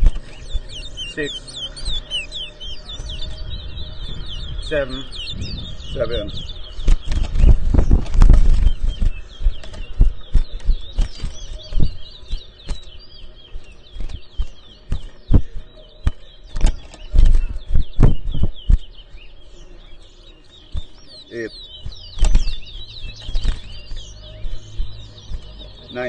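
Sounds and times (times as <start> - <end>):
finches chirping: 0.0 - 26.0
dull thumps and bumps: 13.9 - 19.0.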